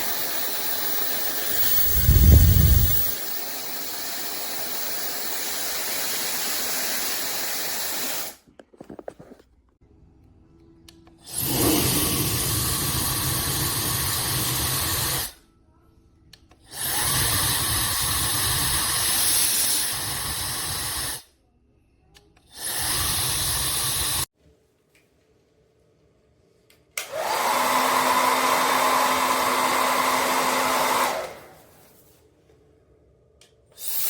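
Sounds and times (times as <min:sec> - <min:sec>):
hair dryer running: 0:00.0 - 0:08.4, 0:27.0 - 0:31.7.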